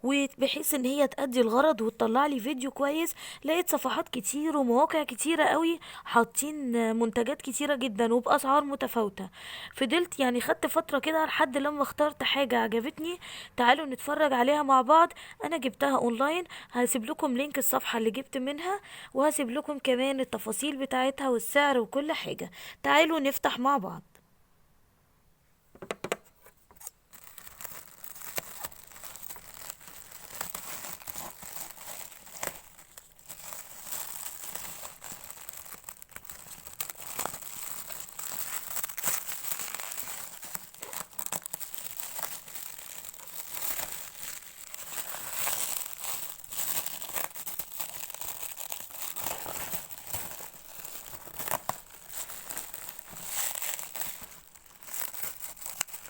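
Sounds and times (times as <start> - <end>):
packaging crinkling and tearing: 26.7 - 56.0.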